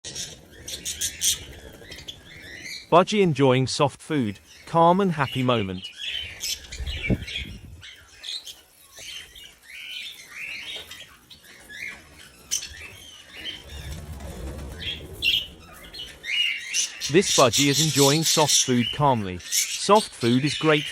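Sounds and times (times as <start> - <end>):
budgerigar chirping and chattering: 4.6 - 13.7, 15.2 - 20.9.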